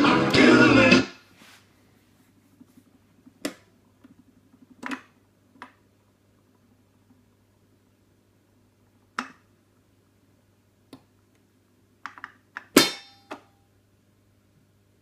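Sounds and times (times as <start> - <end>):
faint electrical hum: 0.0 - 15.0
loud clunk with ring: 12.8 - 13.6.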